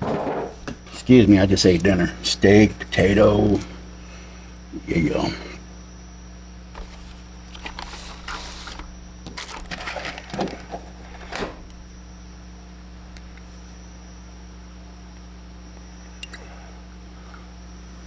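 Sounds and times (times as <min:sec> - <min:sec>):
steady low hum: 0:00.0 - 0:18.0.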